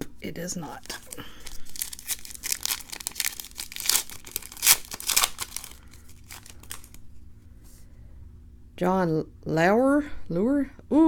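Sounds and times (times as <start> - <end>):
card pack wrapper tearing: 0.7 - 7.0.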